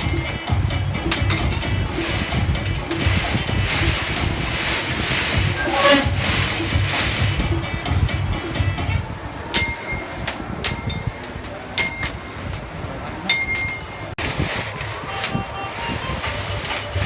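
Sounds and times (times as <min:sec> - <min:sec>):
metal tools clinking on metal: 0:00.0 - 0:08.8, 0:09.6 - 0:12.6, 0:13.3 - 0:14.1
workshop background noise: 0:00.0 - 0:17.0.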